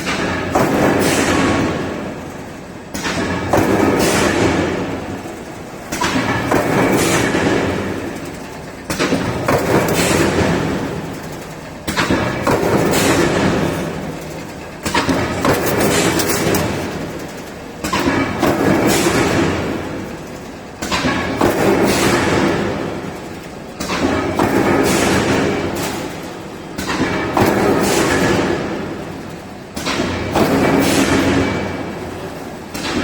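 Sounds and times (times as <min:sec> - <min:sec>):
sheet-metal coil line cycling: 0:08.2 - 0:18.3.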